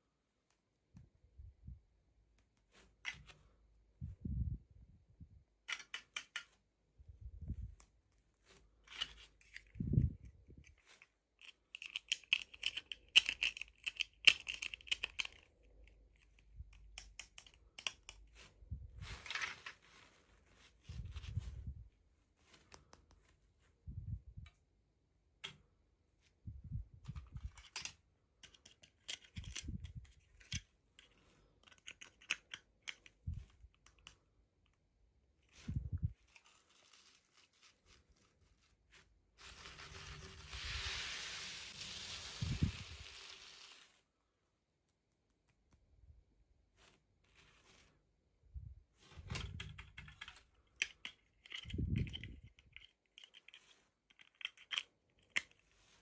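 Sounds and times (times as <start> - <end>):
small clicks and taps: 11.4 - 18.3
packaging rustling and tearing: 36.2 - 44.0.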